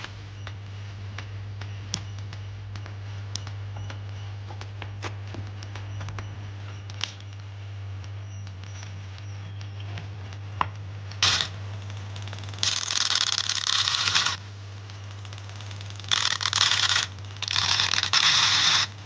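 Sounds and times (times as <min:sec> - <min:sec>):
steady low hum: 0:00.0 - 0:19.0
grinder scraping: 0:16.1 - 0:19.0.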